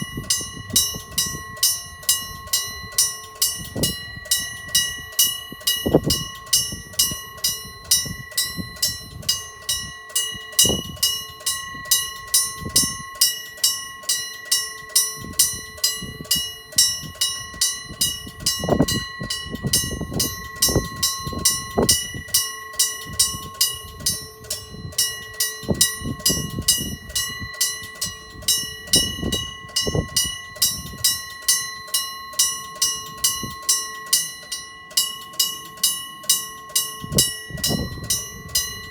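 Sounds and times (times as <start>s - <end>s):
level crossing bell ringing: 0.0s - 38.9s.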